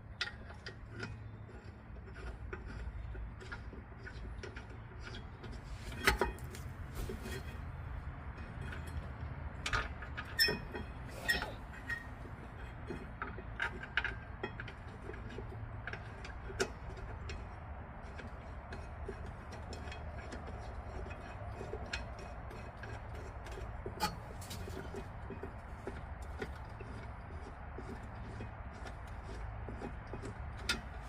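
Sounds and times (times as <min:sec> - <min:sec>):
steady low hum: 0:10.6 - 0:13.2.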